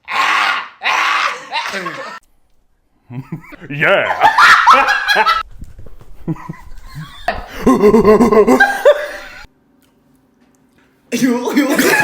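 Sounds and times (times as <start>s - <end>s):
person laughing: 1.5s - 2.2s, 3.1s - 5.4s, 6.2s - 9.5s.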